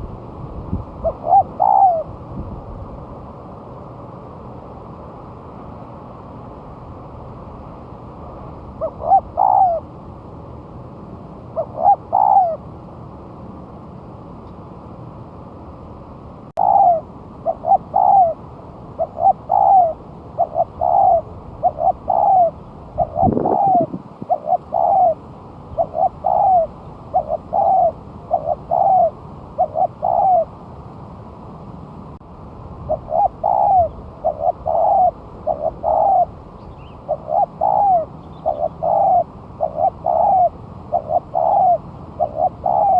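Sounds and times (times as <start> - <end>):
dove cooing: 1.0 - 2.1, 8.8 - 9.9, 11.6 - 12.6, 16.6 - 18.4, 19.0 - 30.5, 32.9 - 42.9.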